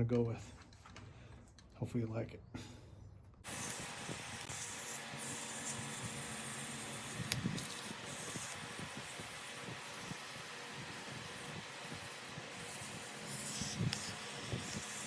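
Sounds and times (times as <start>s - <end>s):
sandpaper hissing on spinning wood: 3.5s - 15.0s.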